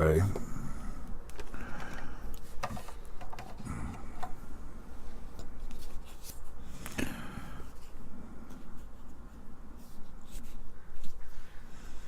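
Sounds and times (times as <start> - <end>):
plastic parts clicking and tapping: 1.3 - 3.6.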